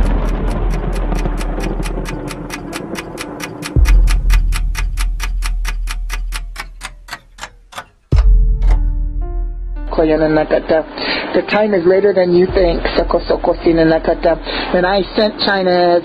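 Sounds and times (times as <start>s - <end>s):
deep rumbling boom: 0.0s - 5.6s, 12.5s - 15.2s
clock ticking: 0.0s - 8.9s, 12.5s - 15.9s.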